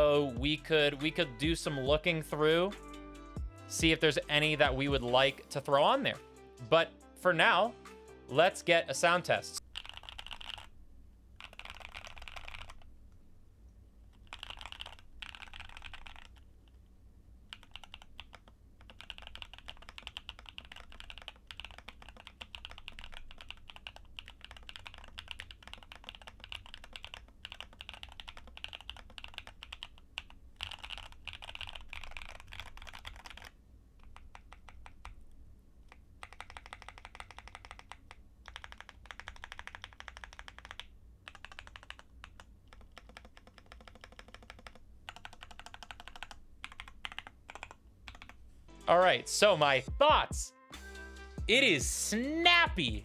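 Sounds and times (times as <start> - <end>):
mechanical keyboard typing: 9.7 - 10.7, 11.4 - 12.9, 14.1 - 16.8, 17.5 - 35.2, 35.9 - 48.4.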